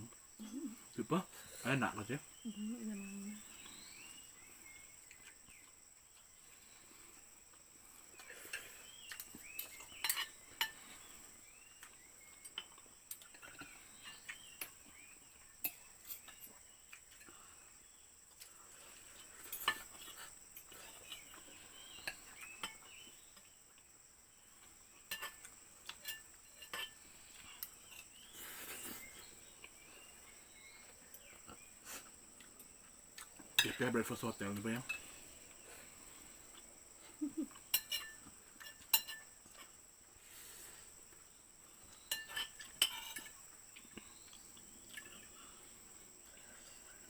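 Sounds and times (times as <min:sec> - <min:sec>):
birds chirping: 0:00.0 - 0:07.2, 0:07.8 - 0:19.6, 0:26.5 - 0:37.8
cutlery clinking on plates: 0:08.5 - 0:11.0, 0:19.4 - 0:20.1, 0:22.0 - 0:22.9, 0:25.1 - 0:27.0, 0:37.6 - 0:39.7, 0:42.0 - 0:43.4.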